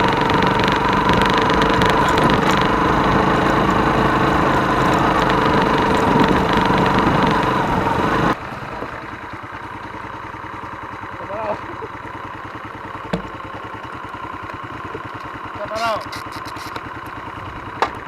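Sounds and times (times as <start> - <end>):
wind and road noise: 0.0 - 10.3, 15.9 - 18.0
engine idling: 0.0 - 18.0
motorcycle engine running: 0.0 - 18.0.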